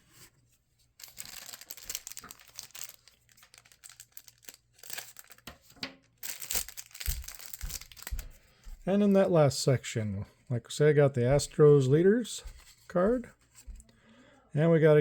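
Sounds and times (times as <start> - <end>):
plastic wrapper crinkling and tearing: 1.0 - 8.3.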